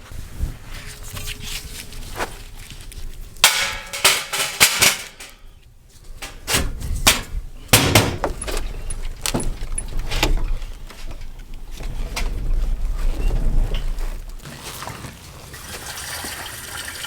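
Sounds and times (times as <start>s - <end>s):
metallic knocks and clanks: 3.4s - 5.5s, 6.2s - 11.3s.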